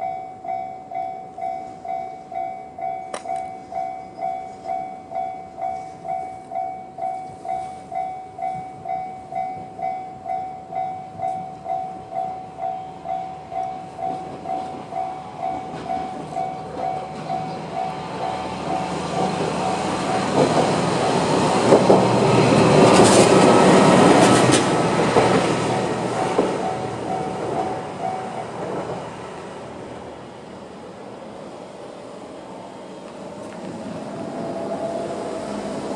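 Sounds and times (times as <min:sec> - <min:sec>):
level crossing warning bell: 0:00.0 - 0:29.6
diesel railcar passing: 0:00.0 - 0:35.9
train wheel clacks: 0:12.2 - 0:29.1.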